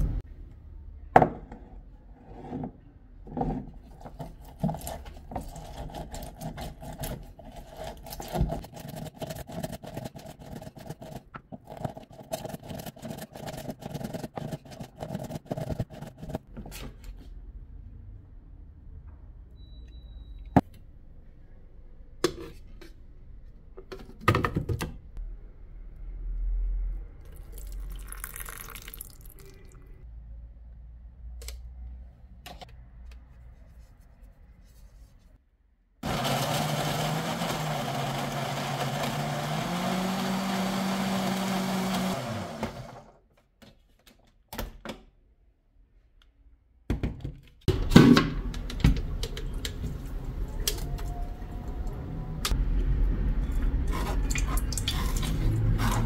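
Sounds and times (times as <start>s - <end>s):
electric blender running: 36.0s - 43.1s.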